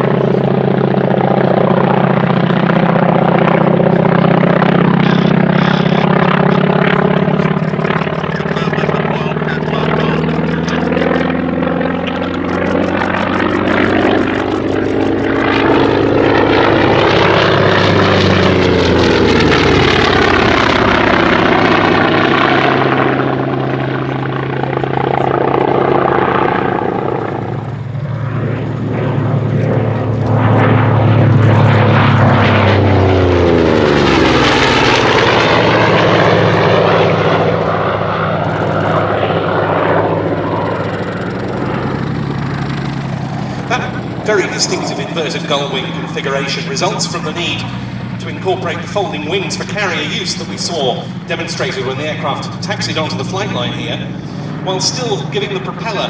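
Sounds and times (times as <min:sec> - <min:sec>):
propeller aircraft passing: 0:00.0 - 0:56.0.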